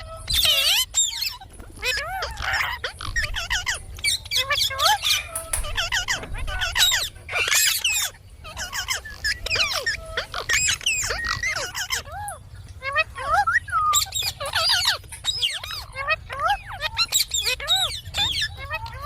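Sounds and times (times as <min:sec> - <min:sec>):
parakeet chattering: 0:00.4 - 0:12.0.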